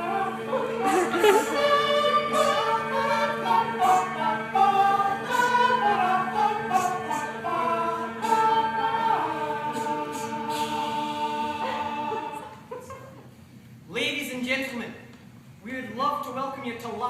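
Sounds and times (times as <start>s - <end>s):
hissing s sounds on a beat: 0.0s - 12.4s
vocal group singing in harmony: 0.0s - 12.8s.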